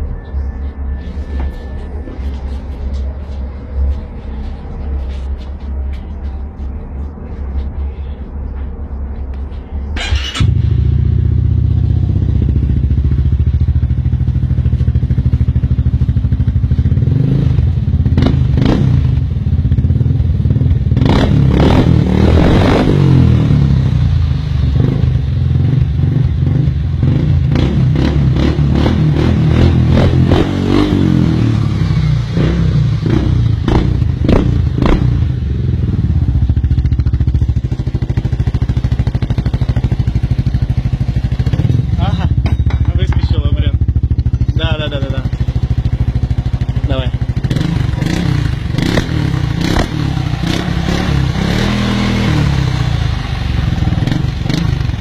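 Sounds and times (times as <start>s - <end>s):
scooter engine running loudly: 31.5s - 55.0s.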